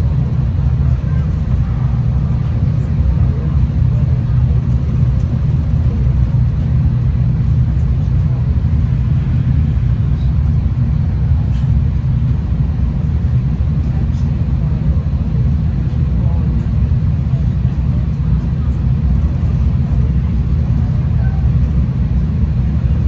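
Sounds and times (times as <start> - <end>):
train low rumble: 0.0 - 23.0.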